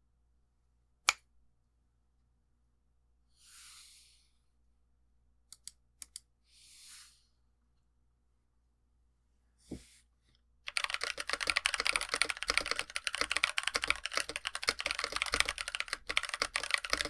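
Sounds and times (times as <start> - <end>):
mechanical keyboard clicks: 5.5 - 6.2, 10.7 - 17.0.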